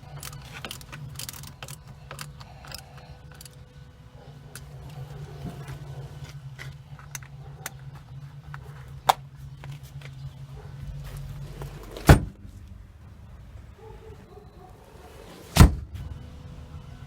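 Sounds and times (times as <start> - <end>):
steady low hum: 0.0 - 17.0
car door shutting: 11.0 - 12.5, 15.0 - 16.2.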